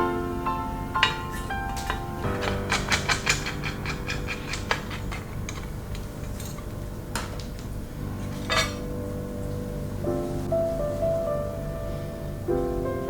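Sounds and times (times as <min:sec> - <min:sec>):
soft background music: 0:00.0 - 0:13.0
keyboard parts clicking: 0:01.0 - 0:08.8.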